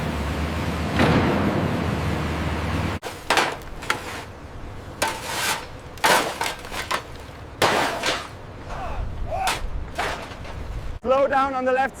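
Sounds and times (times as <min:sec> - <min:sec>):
sharp knocks and clanks: 0:03.0 - 0:04.3, 0:05.0 - 0:08.4, 0:09.4 - 0:10.7.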